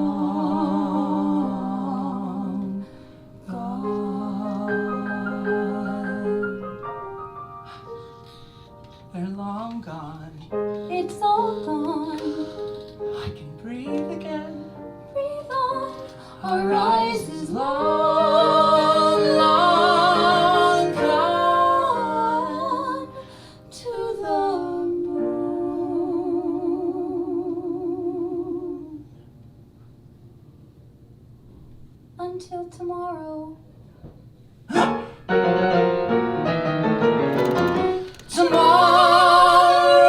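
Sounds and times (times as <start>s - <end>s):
woman singing with vibrato: 13.6s - 23.2s, 38.2s - 40.0s
instrumental accompaniment: 34.8s - 40.0s.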